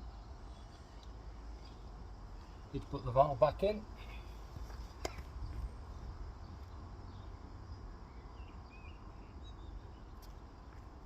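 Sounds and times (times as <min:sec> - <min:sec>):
faint bird chirps: 0:00.0 - 0:02.8.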